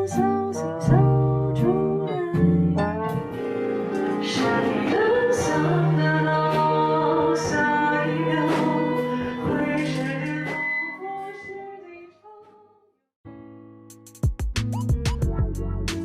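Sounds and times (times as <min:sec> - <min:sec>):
woman singing: 0:00.0 - 0:03.0, 0:03.9 - 0:12.8
acoustic guitar: 0:00.0 - 0:11.5.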